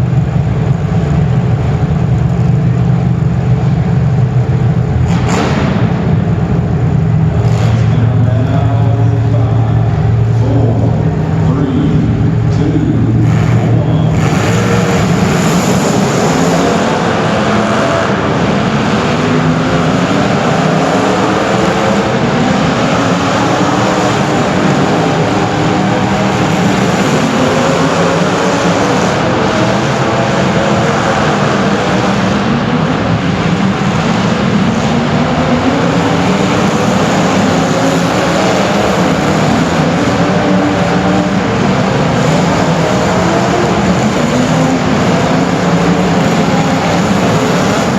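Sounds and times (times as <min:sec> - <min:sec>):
racing engines accelerating: 0:00.0 - 0:47.9.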